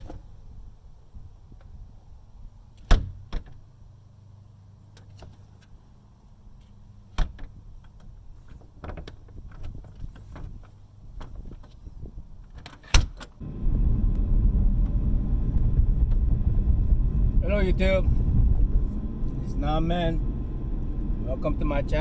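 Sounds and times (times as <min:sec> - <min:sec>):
low steady hum: 0:13.4 - 0:22.0.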